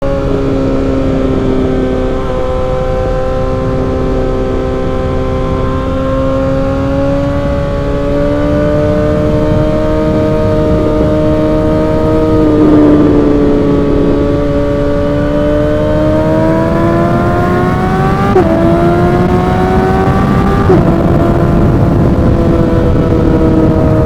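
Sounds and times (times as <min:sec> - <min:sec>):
motorcycle engine running: 0:00.0 - 0:24.0
wind rushing: 0:07.1 - 0:24.0.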